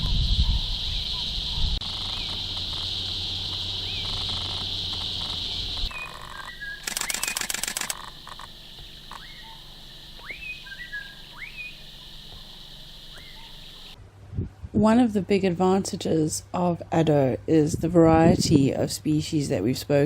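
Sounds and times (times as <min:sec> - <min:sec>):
rapid rattle of clicks: 0:03.5 - 0:08.5
bird whistling upward calls: 0:03.6 - 0:07.8, 0:09.1 - 0:14.0.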